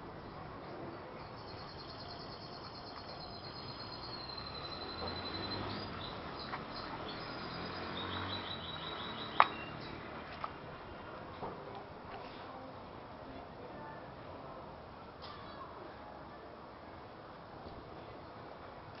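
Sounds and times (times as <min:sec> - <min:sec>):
steady outdoor hiss: 0:00.0 - 0:19.0
small birds chirping: 0:01.2 - 0:10.2.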